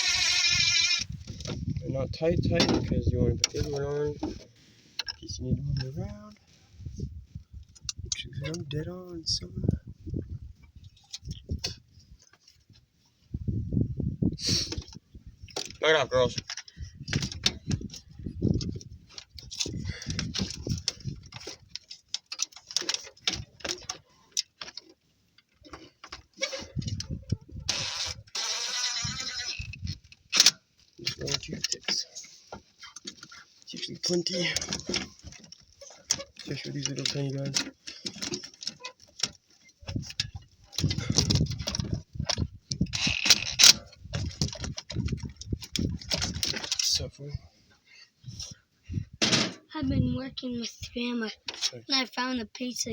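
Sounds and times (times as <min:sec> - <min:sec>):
hand tools clicking and clattering: 0:15.5 - 0:47.0
tools thumping: 0:49.2 - 0:49.7.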